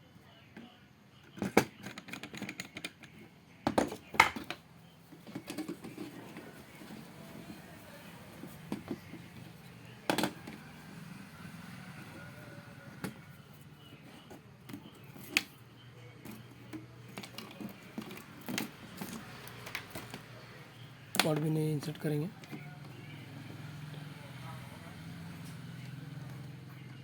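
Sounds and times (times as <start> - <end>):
clicks and knocks handling parts: 1.4 - 7.6, 8.4 - 10.6, 16.2 - 20.3.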